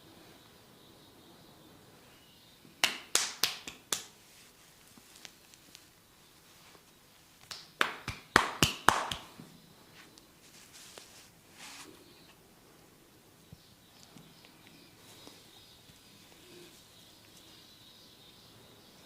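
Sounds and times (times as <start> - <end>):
hands slapping head: 2.8 - 4.2, 7.4 - 9.4.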